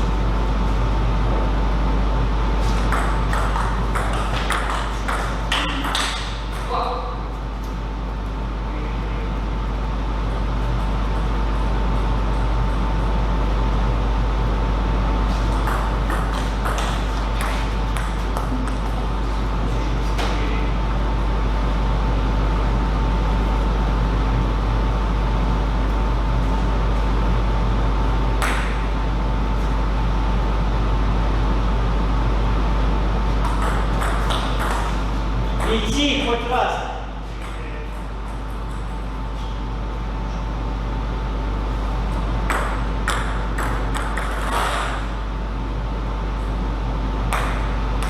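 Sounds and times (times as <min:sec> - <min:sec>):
steady low hum: 0:00.0 - 0:48.0.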